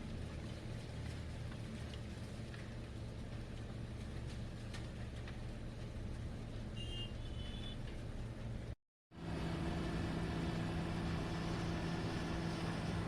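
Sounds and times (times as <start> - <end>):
heavy engine droning: 9.2 - 13.0.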